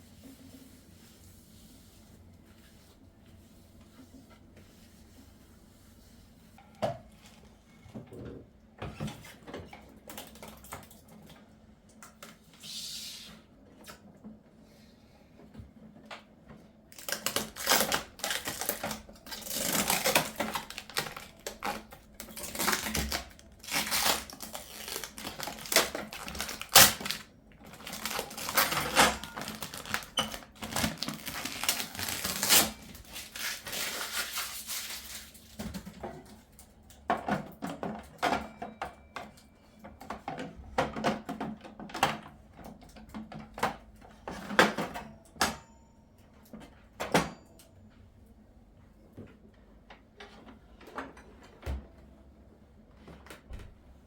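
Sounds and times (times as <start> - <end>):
crinkling and rustling: 15.9 - 36.6.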